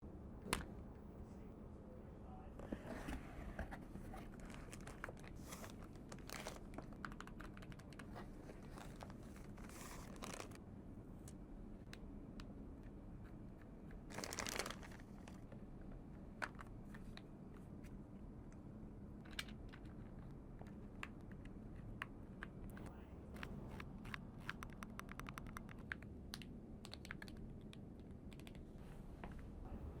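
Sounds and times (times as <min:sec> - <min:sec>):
packaging rustling: 0:04.2 - 0:07.5, 0:08.3 - 0:10.6, 0:14.1 - 0:15.4
keyboard key clicks: 0:24.1 - 0:27.4.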